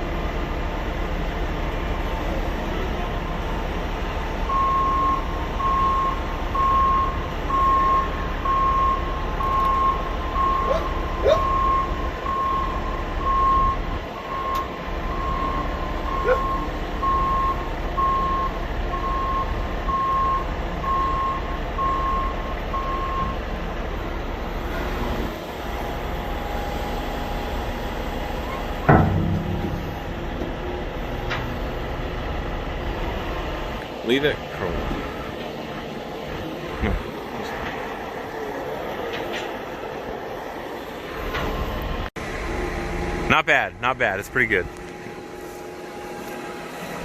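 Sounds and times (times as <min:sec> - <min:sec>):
diesel engine running: 0:00.0 - 0:47.0
backup alarm beeping: 0:04.5 - 0:23.4.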